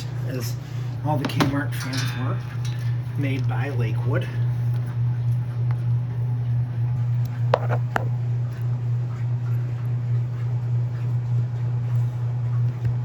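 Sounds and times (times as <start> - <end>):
electric fan motor humming: 0.0 - 13.0.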